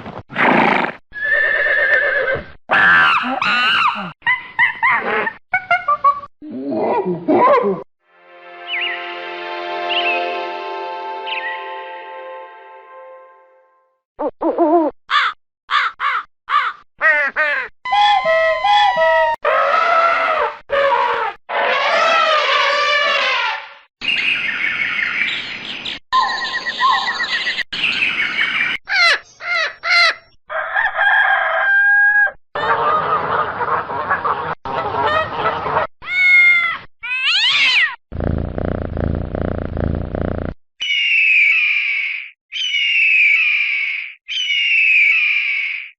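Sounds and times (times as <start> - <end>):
animal call sound effects: 17.0 - 23.7
bird and fowl calls: 28.9 - 35.9.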